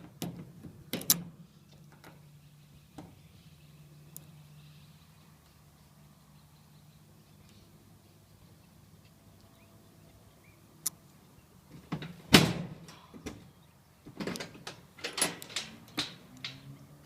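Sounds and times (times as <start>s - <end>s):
padlock clicking and clunking: 14.1s - 16.6s.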